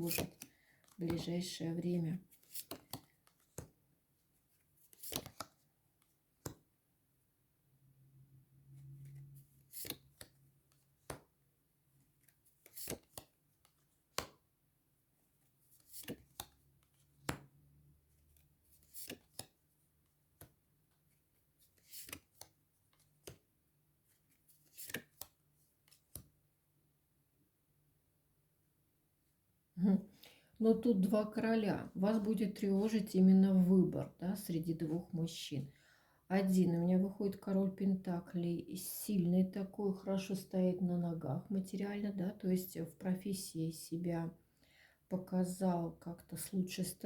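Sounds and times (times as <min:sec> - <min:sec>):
cards clicking on table: 0:02.4 - 0:03.8, 0:04.9 - 0:05.5, 0:06.4 - 0:06.6, 0:09.7 - 0:10.3, 0:11.0 - 0:11.3, 0:12.6 - 0:14.4, 0:15.8 - 0:16.6, 0:17.2 - 0:17.5, 0:21.8 - 0:23.4, 0:24.6 - 0:26.3.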